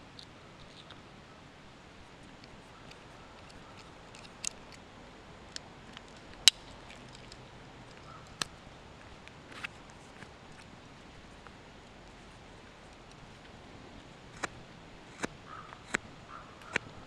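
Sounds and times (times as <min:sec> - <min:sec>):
knife blade snicking wood: 0:16.6 - 0:17.0.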